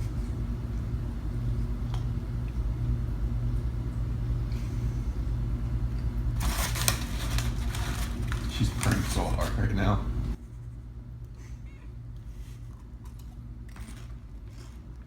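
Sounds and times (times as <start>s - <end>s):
steady low hum: 0.0s - 15.0s
tortilla chips crunching: 6.4s - 9.6s.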